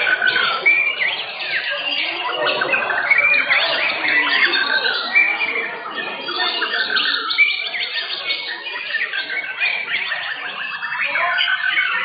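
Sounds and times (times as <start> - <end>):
birds singing: 0.0 - 12.0.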